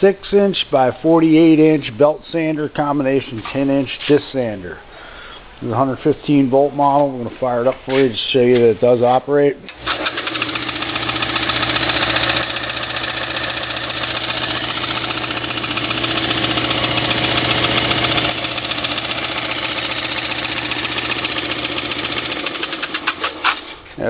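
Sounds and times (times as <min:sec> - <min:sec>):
sanding belt ticking: 0:09.7 - 0:23.8
sander motor humming: 0:09.9 - 0:23.1.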